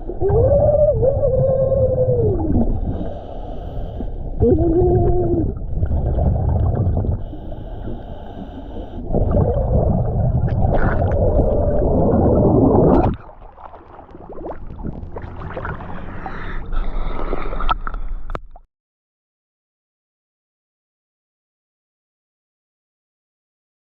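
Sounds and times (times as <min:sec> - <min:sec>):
exhaled bubbles: 0:00.0 - 0:03.2, 0:04.3 - 0:08.2, 0:08.8 - 0:18.4
diver breathing underwater: 0:02.5 - 0:04.4, 0:06.2 - 0:13.2, 0:15.4 - 0:18.4.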